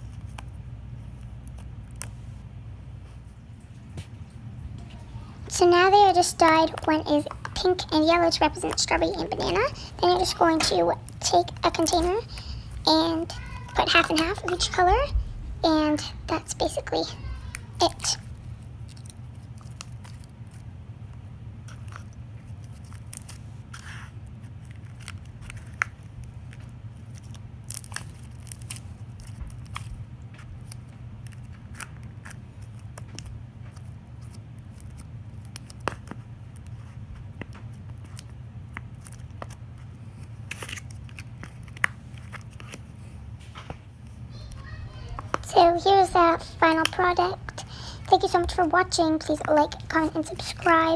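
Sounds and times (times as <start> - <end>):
steady low hum: 0.0 - 50.9
sticky slime clicks and crackles: 21.7 - 29.9, 30.6 - 42.8.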